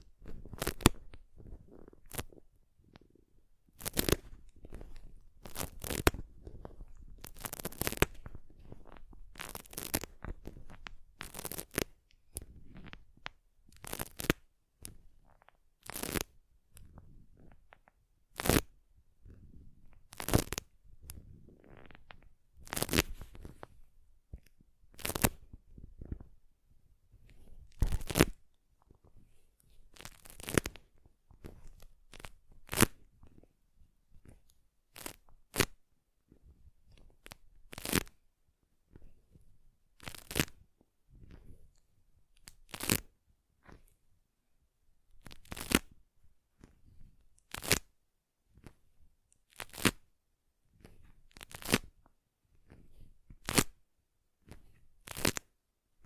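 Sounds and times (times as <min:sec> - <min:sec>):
soft rustling: 0:00.0 - 0:38.2, 0:38.8 - 0:44.0
sharp crackles and rips: 0:00.2 - 0:02.4, 0:03.8 - 0:17.5, 0:18.3 - 0:18.7, 0:19.5 - 0:23.8, 0:24.9 - 0:26.2, 0:27.3 - 0:28.4, 0:29.9 - 0:33.0, 0:34.9 - 0:35.8, 0:37.2 - 0:38.2, 0:40.0 - 0:40.6, 0:42.4 - 0:43.1, 0:45.2 - 0:45.9, 0:47.4 - 0:47.9, 0:49.5 - 0:50.0, 0:51.3 - 0:51.9, 0:53.4 - 0:53.7, 0:54.6 - 0:55.5.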